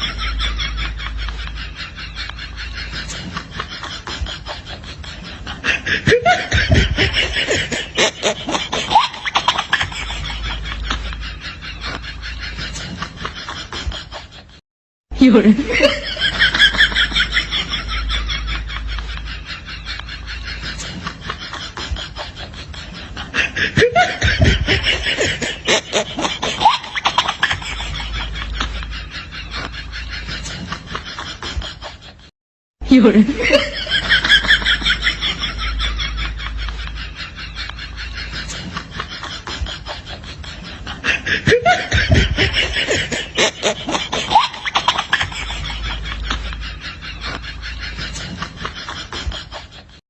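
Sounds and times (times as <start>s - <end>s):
person laughing hard: 0.0s - 14.6s, 15.2s - 50.0s.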